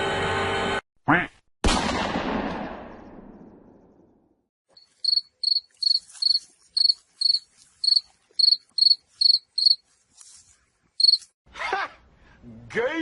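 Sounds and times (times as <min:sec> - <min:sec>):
crickets chirping: 0:04.7 - 0:09.9, 0:11.0 - 0:11.3.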